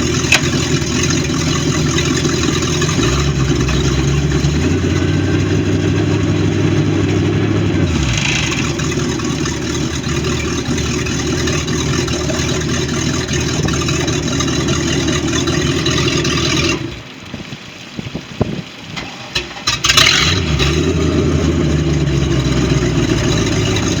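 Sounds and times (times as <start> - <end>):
starter clicks: 0.0 - 1.1
boat engine running and knocking: 0.0 - 24.0.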